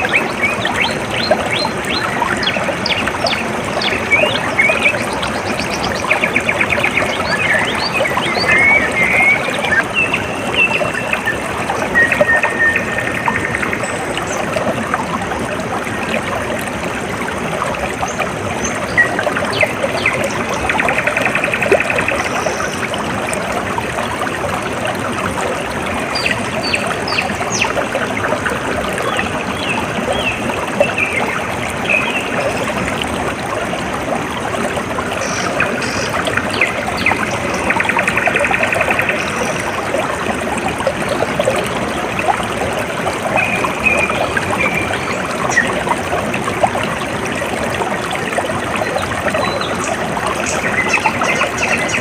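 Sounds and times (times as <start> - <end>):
water trickling in a stream: 0.0 - 52.0.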